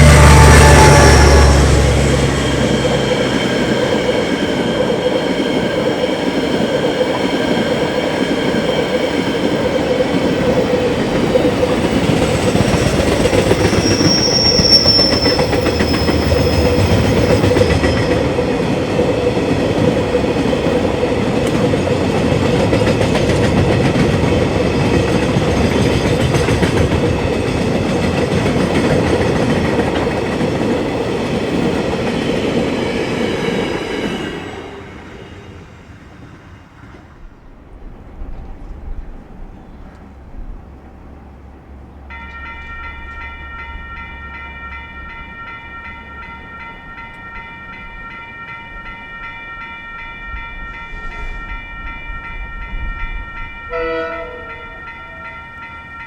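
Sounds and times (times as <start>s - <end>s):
high-pitched wheel squeal: 0.0s - 4.6s, 13.6s - 18.1s
freight train rumbling and rattling: 0.0s - 56.0s.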